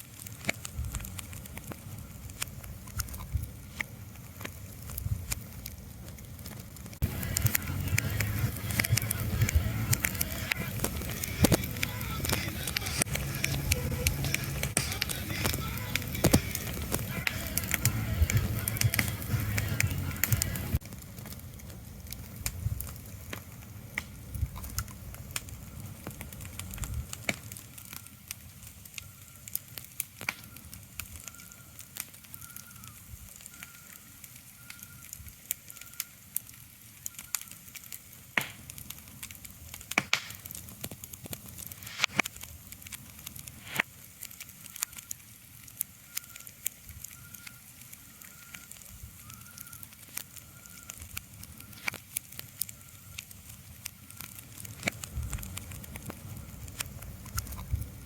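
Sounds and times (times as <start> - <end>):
crackling and sharp pops: 0.0 - 58.0
low rumble: 7.0 - 20.8.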